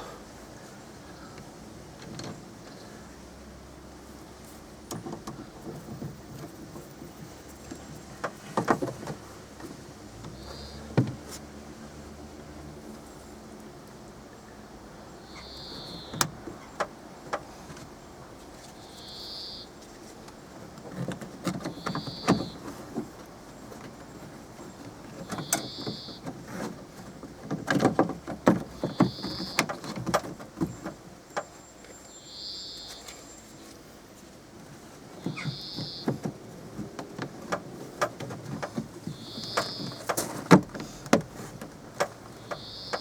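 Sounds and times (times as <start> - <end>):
car door parts clicking and rattling: 4.9 - 11.2, 20.6 - 31.6, 35.2 - 43.0.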